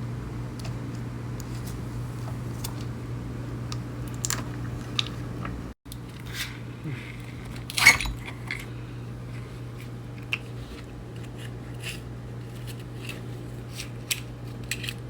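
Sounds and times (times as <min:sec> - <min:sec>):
steady low hum: 0:00.0 - 0:14.6
metal tools clicking and clinking: 0:07.7 - 0:08.7.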